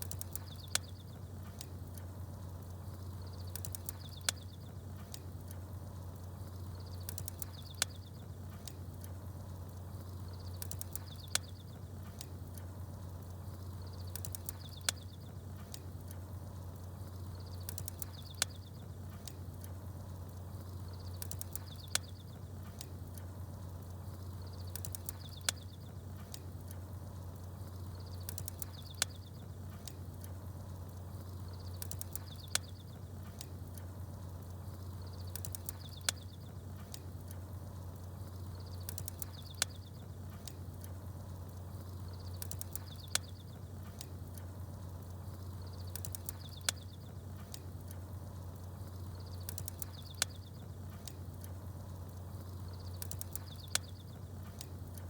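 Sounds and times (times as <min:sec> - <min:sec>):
small birds chirping: 0:00.0 - 0:55.0
wood fire crackling and popping: 0:00.0 - 0:55.0.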